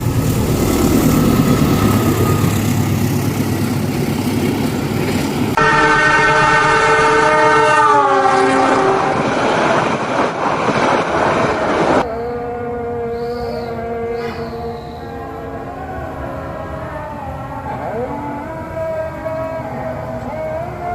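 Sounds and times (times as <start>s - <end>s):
diesel locomotive horn: 0.0s - 2.9s, 5.5s - 9.8s, 11.6s - 20.9s
passenger train rumbling past: 0.0s - 20.9s.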